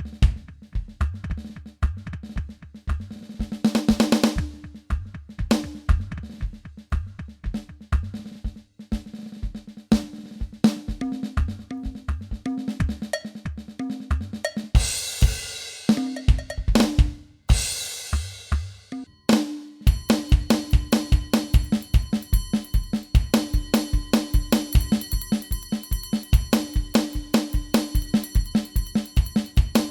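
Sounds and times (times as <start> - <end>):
electronic drum kit beat: 14.4 - 18.8, 19.8 - 29.9
cymbal crashes: 14.8 - 16.2, 17.5 - 18.6, 19.3 - 29.9.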